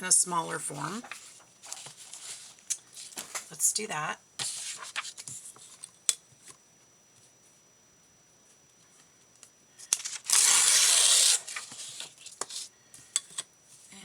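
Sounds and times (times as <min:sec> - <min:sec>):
paper ripping: 0:10.0 - 0:12.7.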